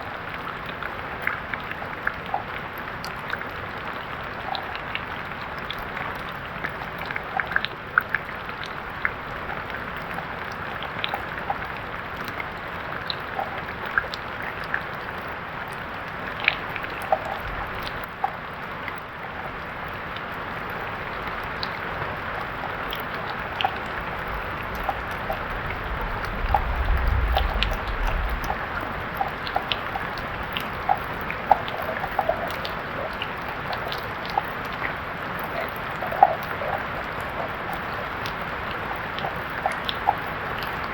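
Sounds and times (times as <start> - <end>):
raindrops ticking: 0.0 - 40.9
steady rain hiss: 0.0 - 40.9
low rumble: 24.7 - 29.5.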